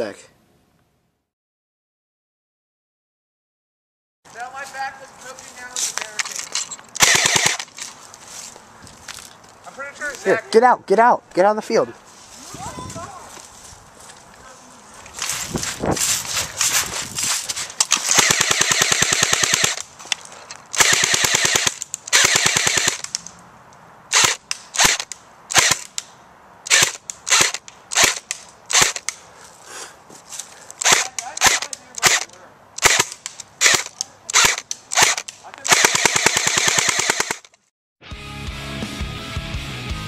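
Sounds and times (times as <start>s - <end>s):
airsoft gun full-auto bursts: 7.0s - 7.7s, 18.0s - 19.8s, 20.7s - 23.1s, 24.1s - 25.9s, 26.7s - 29.1s, 30.8s - 37.5s
airsoft gun single shots: 7.0s - 7.7s, 24.1s - 26.0s, 30.8s - 37.5s.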